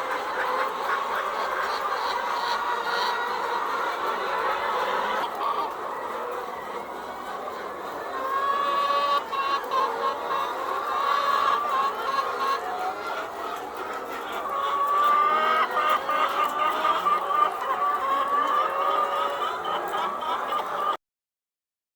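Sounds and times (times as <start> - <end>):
hens clucking: 0.0 - 21.0.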